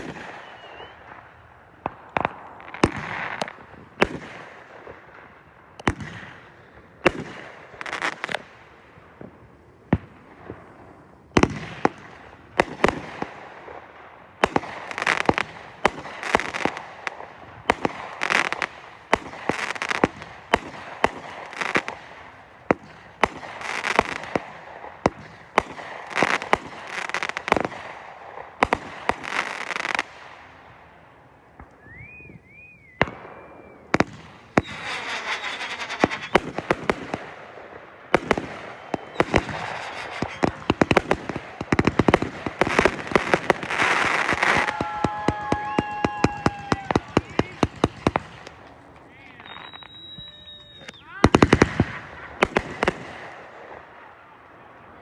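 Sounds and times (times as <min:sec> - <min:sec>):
warbling firework whistle: 0:00.0 - 0:01.3, 0:31.6 - 0:37.2, 0:38.2 - 0:41.4, 0:42.6 - 0:48.2, 0:49.3 - 0:52.9
fireworks banging and crackling: 0:00.0 - 0:55.0.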